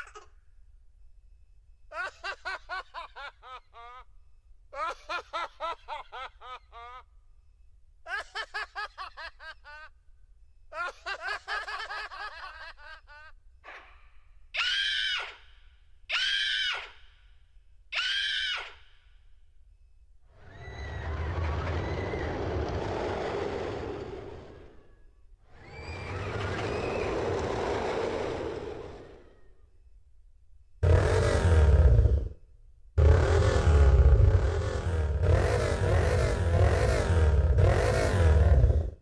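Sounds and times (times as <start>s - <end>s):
sampled laughter bursts: 1.9s - 4.1s, 4.8s - 7.2s
short sampled screams: 14.6s - 15.5s, 16.1s - 17.0s, 18.0s - 18.9s.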